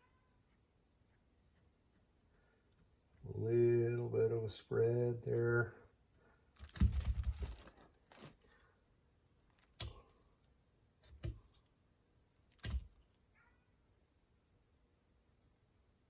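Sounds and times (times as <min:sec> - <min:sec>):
handling clicks and light knocks: 0:09.5 - 0:11.8, 0:12.5 - 0:13.2.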